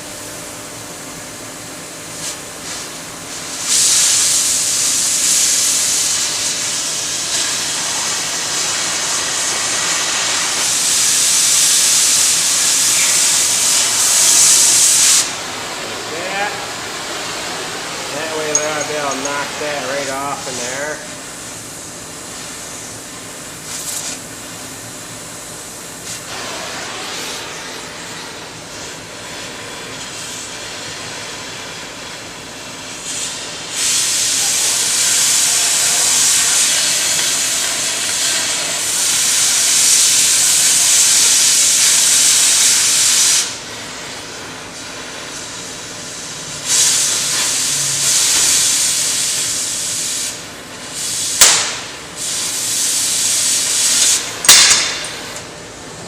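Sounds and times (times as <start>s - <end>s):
loud hissing cut through steel: 3.4s - 21.0s, 33.0s - 43.6s, 46.5s - 55.3s.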